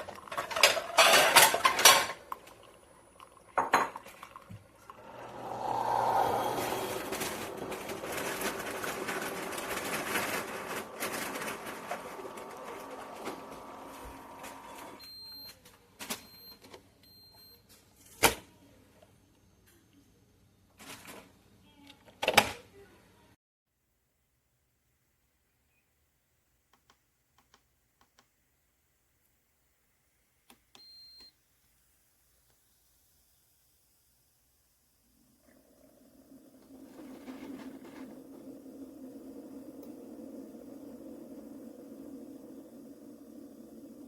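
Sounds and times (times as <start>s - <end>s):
coffee maker hissing: 0.0s - 15.0s, 31.6s - 44.0s.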